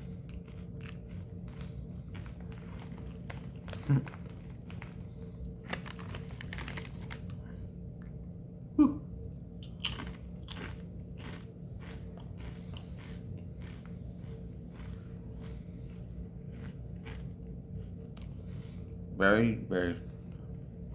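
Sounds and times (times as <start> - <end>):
chips crunching: 0.1 - 7.4, 9.6 - 17.4.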